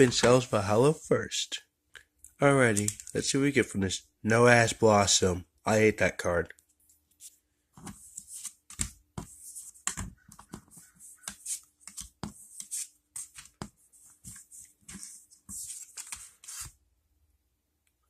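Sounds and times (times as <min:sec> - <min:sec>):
trading cards rustling and flicking: 0:02.6 - 0:03.2, 0:07.2 - 0:16.8.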